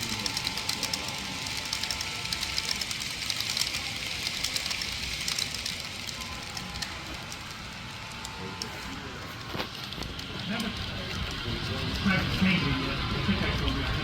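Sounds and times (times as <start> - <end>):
model train clicking on track: 0.0 - 14.0.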